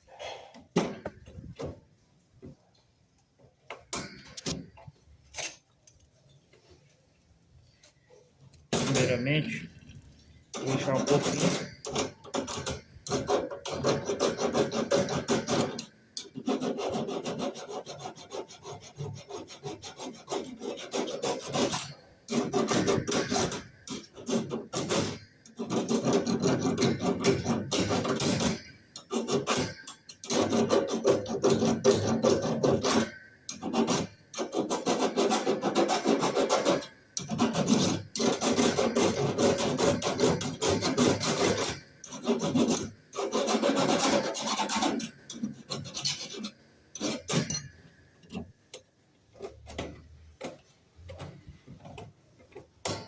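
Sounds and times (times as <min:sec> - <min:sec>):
copper tubing scraped by hand: 0:10.5 - 0:47.7.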